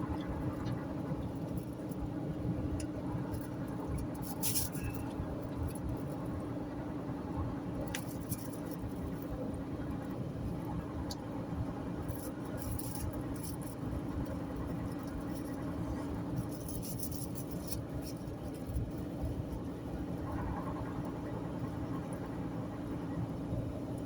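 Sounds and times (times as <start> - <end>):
car cabin road and engine noise: 0.0 - 24.0
faint high ticks and crackles: 0.1 - 6.4, 7.8 - 11.3, 12.0 - 21.2.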